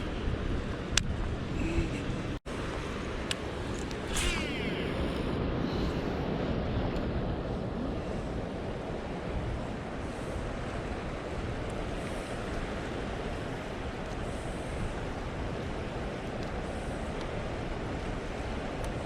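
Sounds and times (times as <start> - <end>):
wind buffeting microphone: 0.0 - 2.4.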